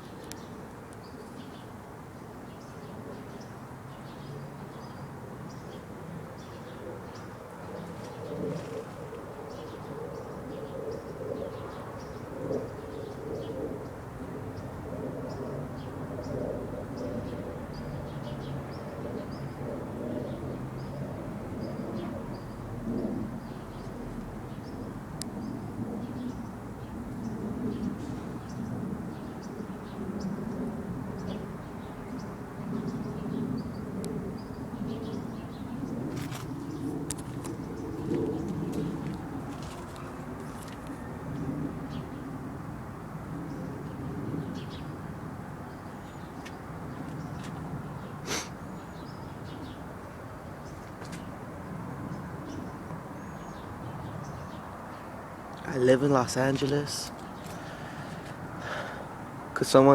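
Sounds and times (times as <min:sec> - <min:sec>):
small birds chirping: 0:43.3 - 0:59.9.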